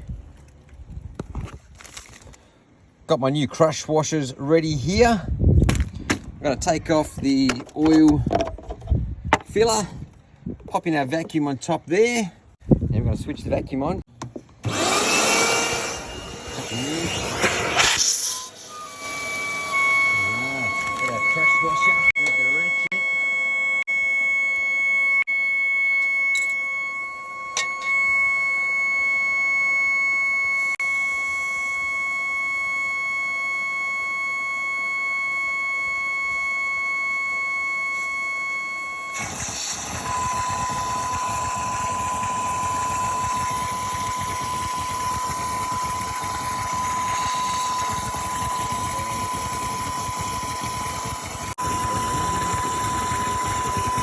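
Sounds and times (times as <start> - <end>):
vacuum cleaner motor whining: 14.6 - 54.0.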